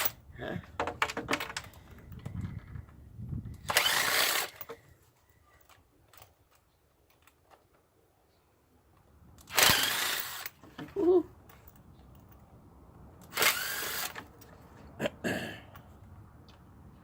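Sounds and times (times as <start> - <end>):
power drill burst: 3.7 - 4.6, 9.5 - 10.6, 13.3 - 14.2.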